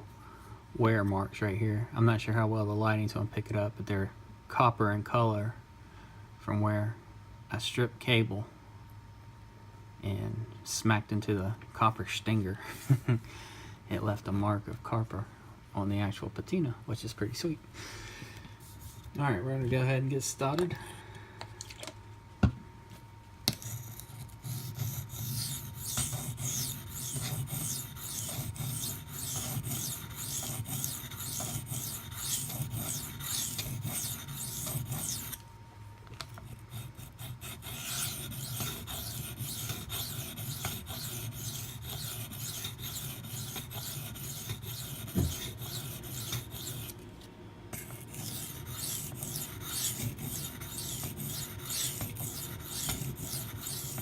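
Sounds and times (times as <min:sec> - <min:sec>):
knife rasping on whetstone: 0:23.5 - 0:35.4, 0:36.5 - 0:47.0, 0:47.8 - 0:54.0.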